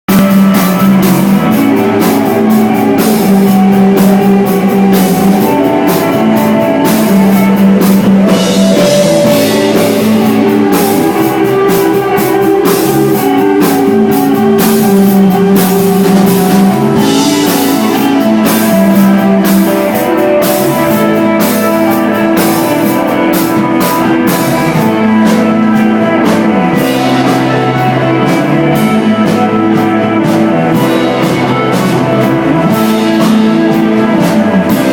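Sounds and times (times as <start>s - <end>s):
electric guitar: 0.0s - 34.9s
bass guitars holding low notes: 0.1s - 34.9s
drum kit steady beat: 0.1s - 34.9s.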